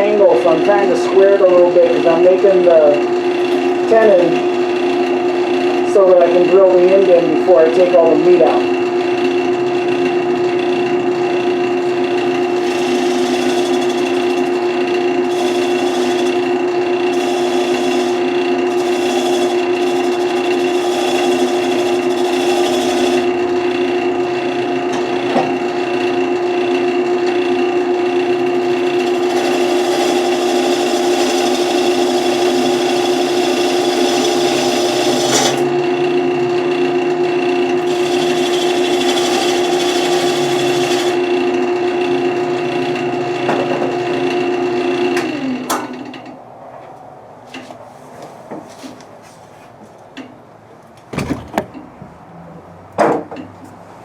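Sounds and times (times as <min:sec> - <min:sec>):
turning tool scraping wood: 0:00.0 - 0:07.0, 0:11.4 - 0:23.4, 0:28.1 - 0:35.8, 0:37.8 - 0:41.3
wood lathe motor hum: 0:00.0 - 0:45.5.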